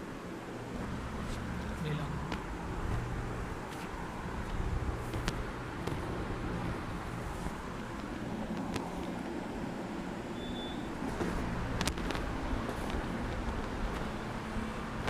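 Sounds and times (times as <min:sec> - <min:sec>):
low background rumble: 0:00.0 - 0:15.0.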